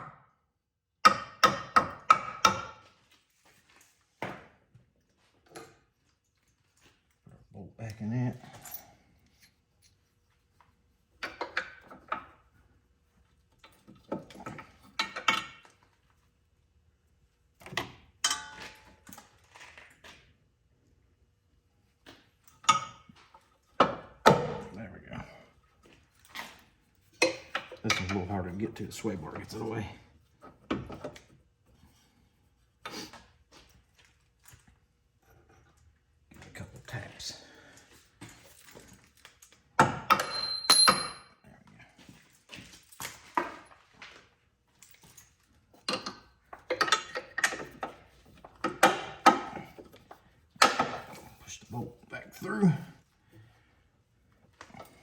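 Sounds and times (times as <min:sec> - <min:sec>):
metal tools clinking and knocking: 0:18.2 - 0:19.7, 0:26.2 - 0:29.7, 0:38.2 - 0:41.4, 0:44.7 - 0:51.4
light metal clinks: 0:40.1 - 0:41.3.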